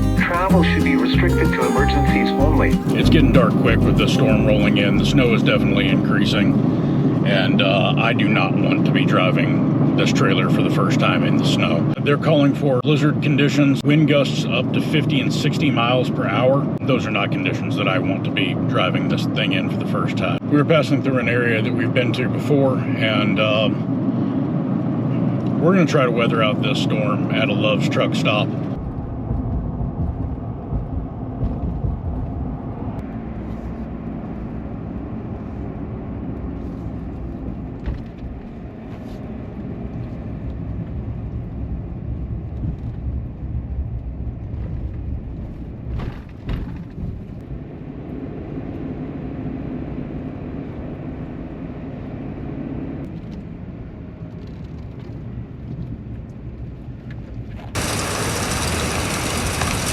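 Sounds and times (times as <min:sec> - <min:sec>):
vehicle rumble at road speed: 0:03.0 - 0:08.4, 0:28.5 - 0:59.9
loud rushing noise: 0:57.8 - 0:59.9.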